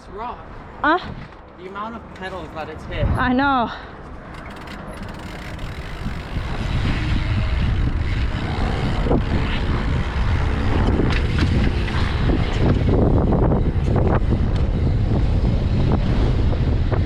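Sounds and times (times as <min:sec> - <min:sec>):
wind buffeting microphone: 0:02.3 - 0:17.0
bike clicks and rattles: 0:04.3 - 0:13.0.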